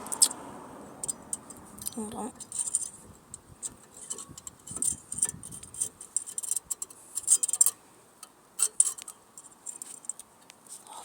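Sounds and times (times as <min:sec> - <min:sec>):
brake pad metallic clicks: 0:00.0 - 0:10.6.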